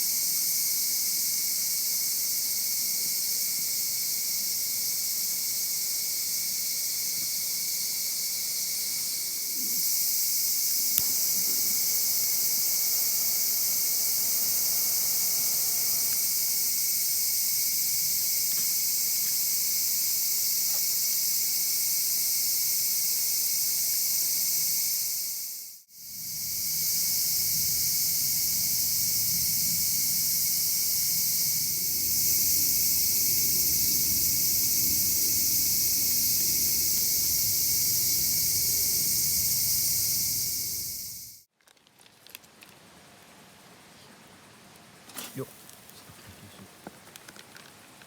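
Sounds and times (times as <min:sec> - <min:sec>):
crickets and insects trilling: 0:00.0 - 0:41.5, 0:42.2 - 0:48.0.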